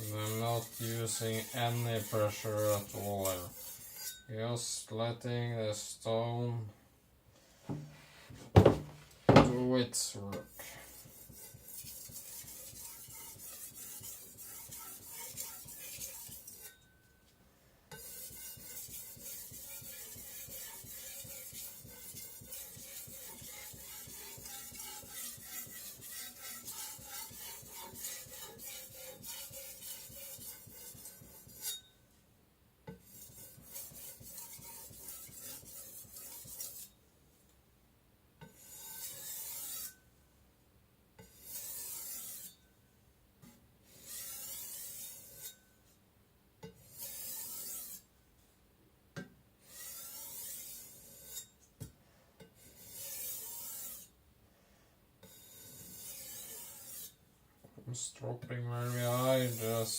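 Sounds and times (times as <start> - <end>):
knife scraping on whetstone: 0.0 - 4.3, 10.7 - 16.9, 17.9 - 31.9, 32.9 - 37.0, 38.4 - 40.0, 41.2 - 42.6, 43.4 - 45.6, 46.7 - 48.1, 49.6 - 51.7, 52.4 - 54.2, 55.2 - 57.2, 58.8 - 59.9.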